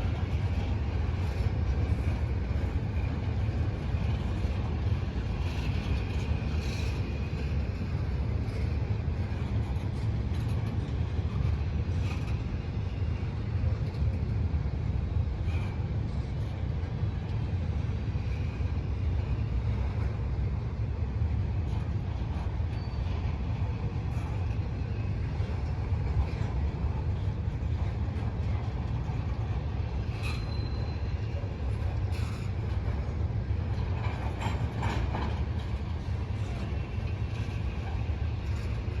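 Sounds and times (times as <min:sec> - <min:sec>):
rail clicks: 0:00.0 - 0:39.0
train wheels rumbling: 0:00.0 - 0:39.0
wheel squeal: 0:22.7 - 0:23.4, 0:30.0 - 0:32.6.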